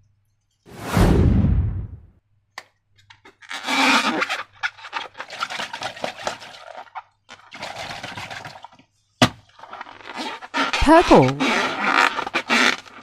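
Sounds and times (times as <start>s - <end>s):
slime squelching: 9.5s - 13.0s.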